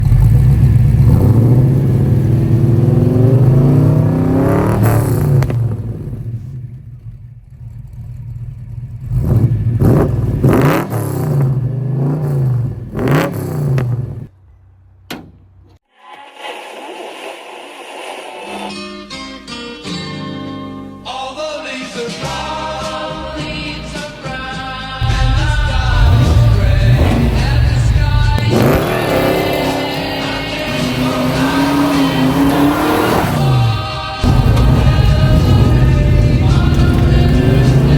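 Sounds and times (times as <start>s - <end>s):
car engine revving: 0.0s - 14.7s, 25.0s - 37.9s.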